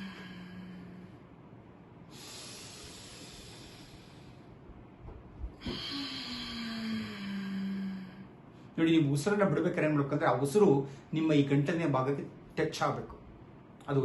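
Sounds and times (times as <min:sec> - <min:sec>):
man breathing deeply: 0:00.0 - 0:01.4, 0:02.0 - 0:04.7, 0:05.4 - 0:08.8.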